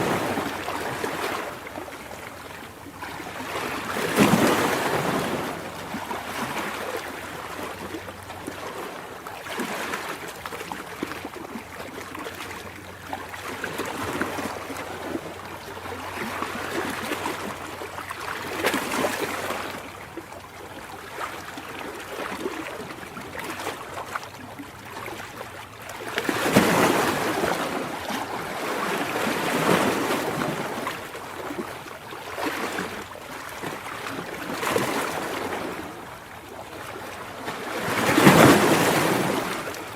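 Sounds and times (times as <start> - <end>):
ocean waves breaking: 0.0 - 11.3, 20.8 - 39.9.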